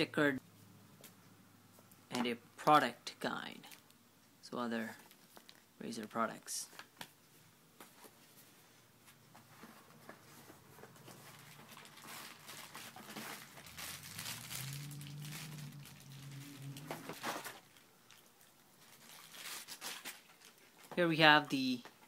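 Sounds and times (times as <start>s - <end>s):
plastic packaging crinkling: 5.0s - 5.7s, 10.7s - 20.9s.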